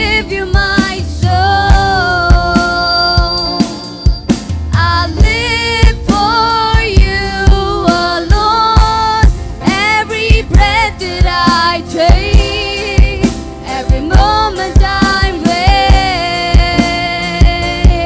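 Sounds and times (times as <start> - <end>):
drum kit beat: 0.0 - 18.0
worship band music: 0.0 - 18.0
person singing: 9.7 - 18.0.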